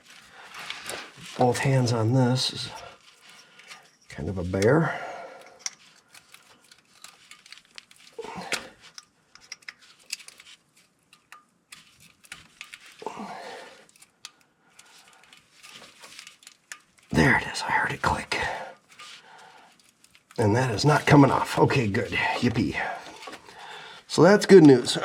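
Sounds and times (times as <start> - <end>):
person grunting: 13.0 - 13.7.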